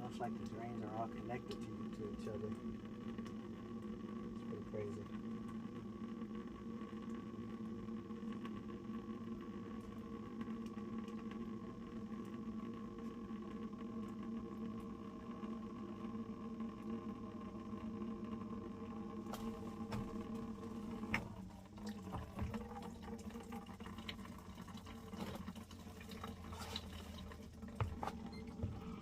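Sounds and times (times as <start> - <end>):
machine hum with tones: 0.0 - 29.0.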